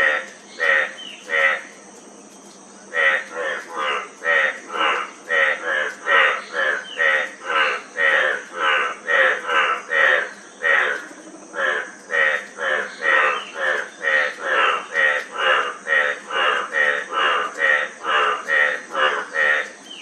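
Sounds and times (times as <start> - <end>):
frogs croaking: 0.0 - 20.0
high insect drone: 0.0 - 20.0.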